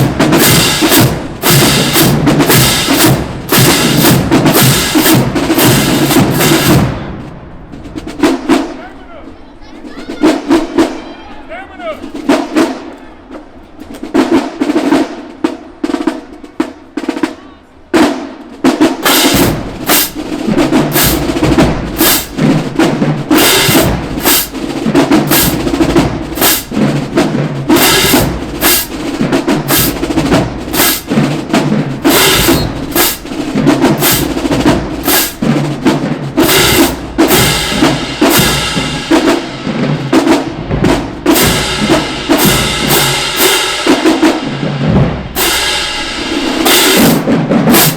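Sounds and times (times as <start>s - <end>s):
snare drum hits: 0.0s - 6.9s, 19.0s - 47.9s
drumline with bass drums: 0.0s - 47.9s.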